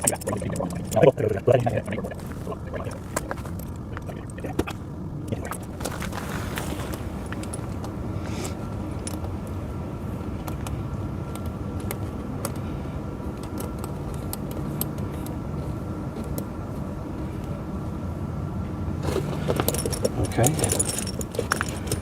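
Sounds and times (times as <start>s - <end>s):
tractor engine idling: 2.1s - 9.9s
chain links clinking: 19.5s - 22.0s.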